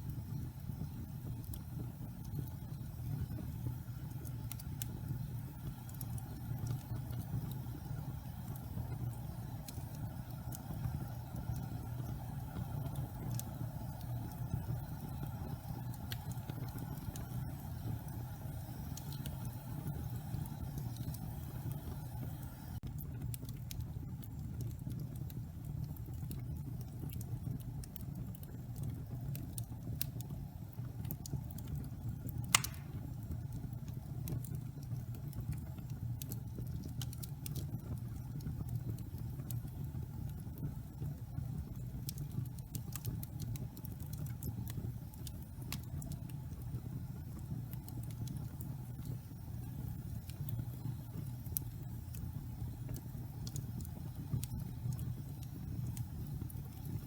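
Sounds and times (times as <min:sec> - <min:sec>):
low fire rumble: 0:00.0 - 0:57.0
wood fire crackling: 0:00.0 - 0:57.0
loud fire pop: 0:32.5 - 0:33.1.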